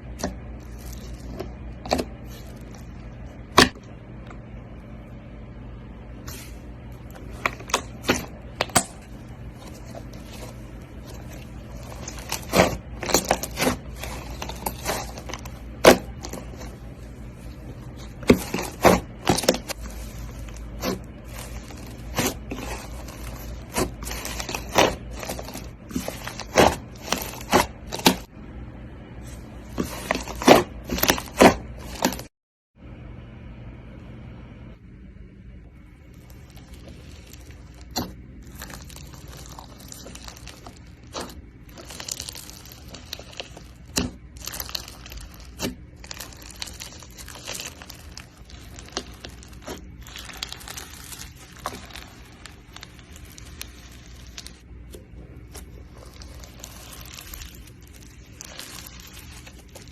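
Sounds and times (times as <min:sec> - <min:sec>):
hands squishing slime: 0:06.3 - 0:28.3, 0:36.1 - 0:59.9
slime popping and crackling: 0:07.2 - 0:16.8, 0:17.9 - 0:28.3, 0:36.1 - 0:54.7, 0:55.4 - 0:59.9.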